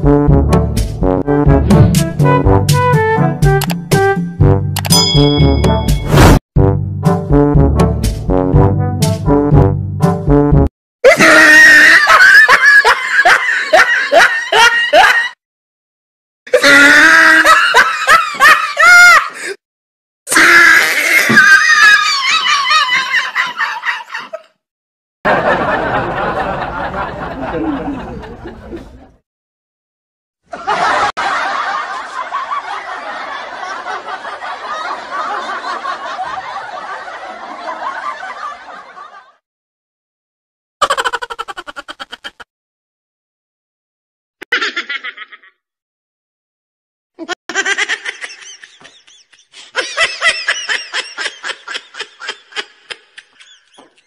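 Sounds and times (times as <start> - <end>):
snickering laugh sound effect: 11.1 - 15.4, 25.3 - 29.1, 40.8 - 42.5, 44.4 - 45.6, 47.2 - 54.0.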